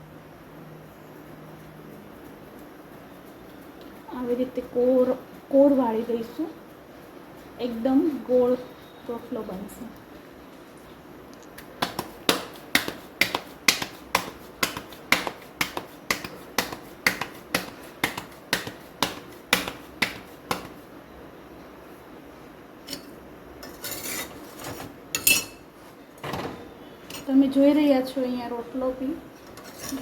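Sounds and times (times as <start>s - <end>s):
hands patting dough: 11.4s - 21.0s
dish clinking: 22.9s - 25.7s.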